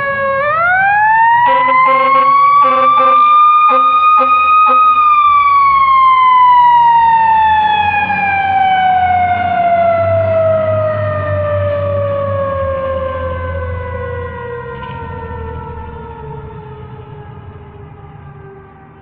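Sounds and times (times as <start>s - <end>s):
fire truck siren winding down: 0.0s - 19.0s
truck engine rumbling: 0.0s - 19.0s
short air horn blasts: 1.5s - 4.9s.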